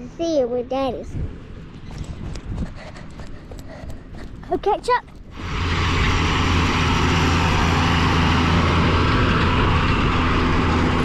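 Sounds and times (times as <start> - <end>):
tractor engine running: 3.8 - 11.0.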